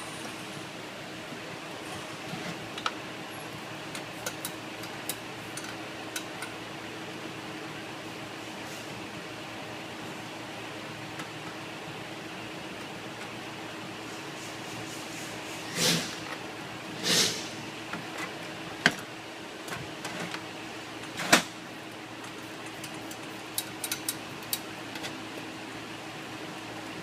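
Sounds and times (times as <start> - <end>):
steady hum: 0.0 - 27.0
tools scraping: 14.1 - 16.4, 17.0 - 17.6.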